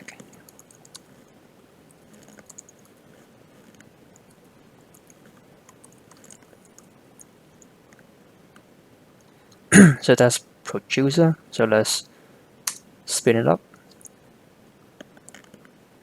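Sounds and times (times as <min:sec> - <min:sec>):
keyboard typing: 0:00.0 - 0:01.3, 0:01.9 - 0:03.0, 0:03.6 - 0:08.0.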